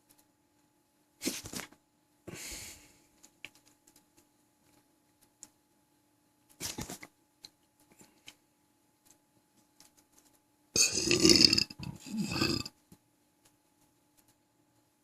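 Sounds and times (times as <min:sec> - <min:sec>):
person burping: 0:10.8 - 0:12.8.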